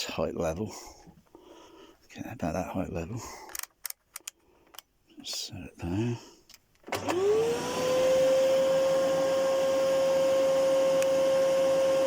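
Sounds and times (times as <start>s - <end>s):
vacuum cleaner motor whining: 6.9s - 12.0s.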